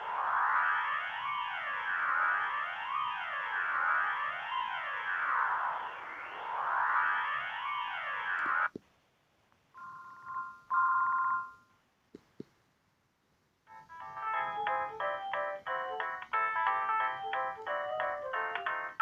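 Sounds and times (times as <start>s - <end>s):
fast electronic ringtone melody: 13.7s - 19.0s.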